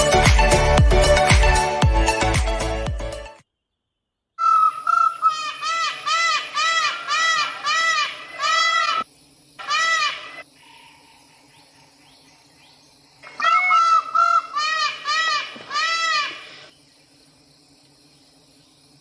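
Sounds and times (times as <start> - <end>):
animal calls: 4.4 - 9.0, 9.6 - 11.2, 13.2 - 16.7
faint steady hum: 4.5 - 19.0.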